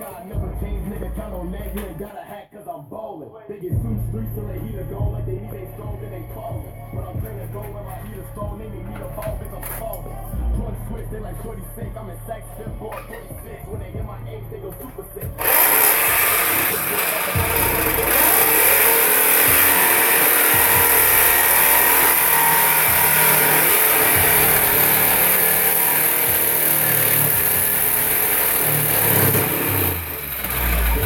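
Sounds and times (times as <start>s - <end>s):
power saw cutting metal pipe: 14.4s - 31.0s.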